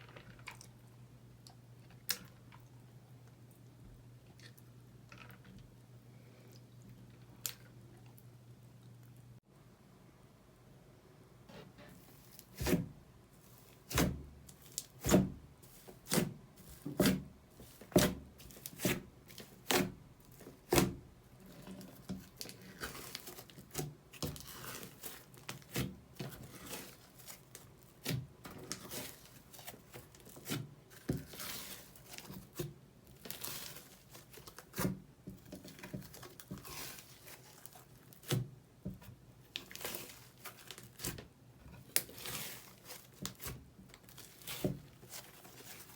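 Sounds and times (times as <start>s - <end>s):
slime crackling and squishing: 21.4s - 45.9s.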